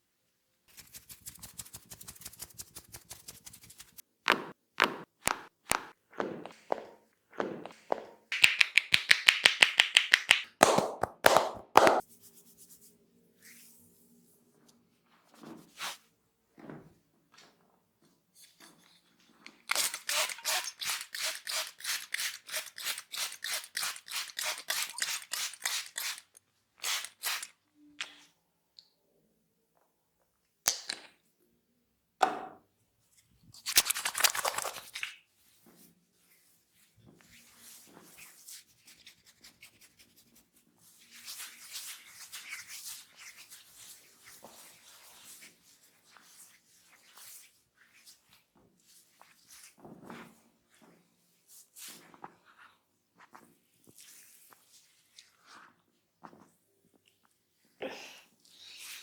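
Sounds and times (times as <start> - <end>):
soft rubbing: 0.7 - 4.0
hands tapping on head: 7.4 - 12.0
sharp snaps: 7.6 - 12.0.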